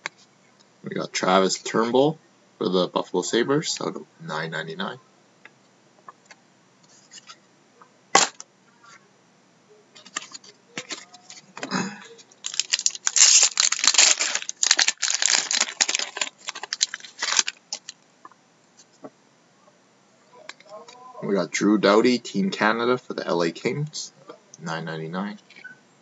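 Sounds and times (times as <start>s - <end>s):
wrapper crinkling and tearing: 10.0s - 18.0s.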